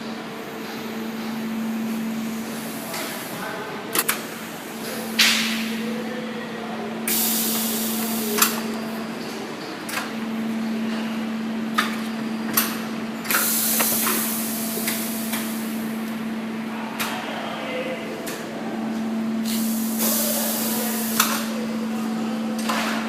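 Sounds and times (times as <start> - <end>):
electrical hum: 0.0 - 23.0
pneumatic air hissing: 7.1 - 8.6, 13.3 - 15.7, 19.4 - 21.5.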